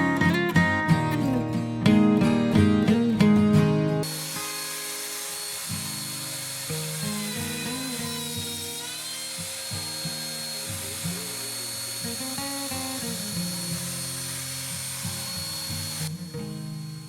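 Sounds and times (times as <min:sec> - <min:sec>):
cnc router spindle whine: 0:04.0 - 0:17.0.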